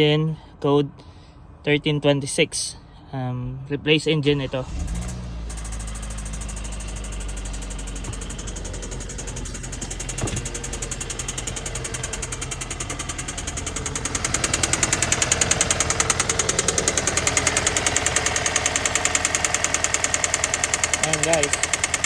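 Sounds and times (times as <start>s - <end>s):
car engine idling with knock: 4.7s - 22.0s.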